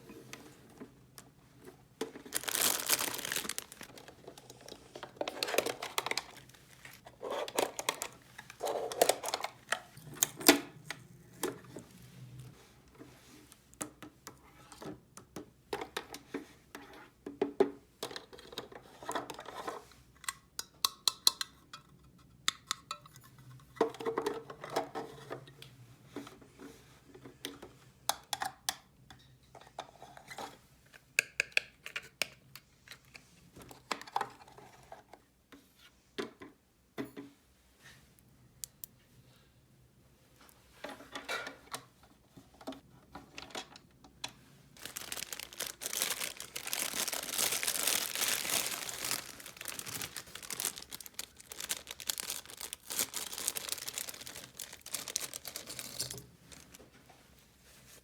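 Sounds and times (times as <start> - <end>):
plastic toy pieces clattering: 2.2 - 10.4, 44.8 - 56.8.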